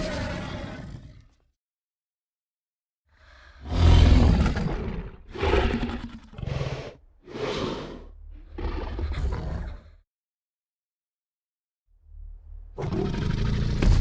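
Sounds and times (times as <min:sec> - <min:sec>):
dinosaur roars and growls: 0:00.0 - 0:01.4, 0:03.1 - 0:10.0, 0:12.7 - 0:14.0.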